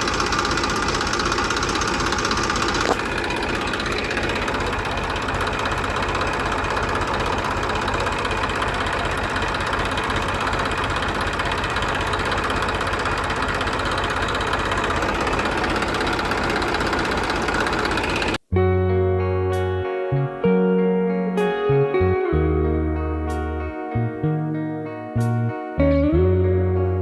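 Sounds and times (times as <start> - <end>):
tractor engine chugging: 0.0 - 18.4
guitar music: 18.5 - 27.0.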